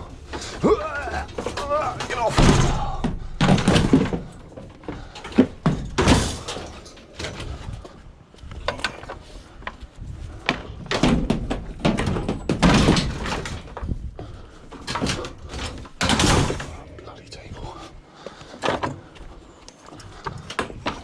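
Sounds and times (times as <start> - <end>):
scrap items knocking and clattering: 0.2 - 7.6, 10.4 - 16.8.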